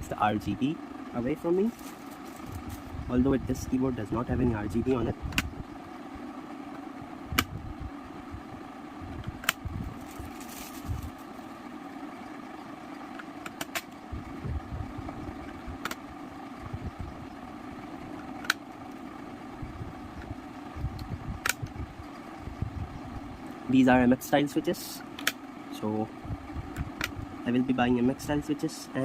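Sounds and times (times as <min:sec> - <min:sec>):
steady low hum: 0:00.0 - 0:29.0
sharp plastic clicks of switches: 0:25.2 - 0:25.4.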